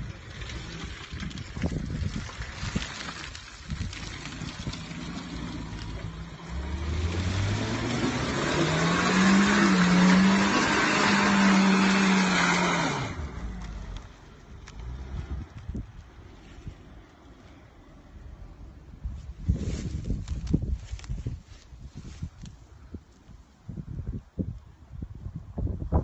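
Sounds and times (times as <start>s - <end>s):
car engine revving: 4.2s - 15.4s.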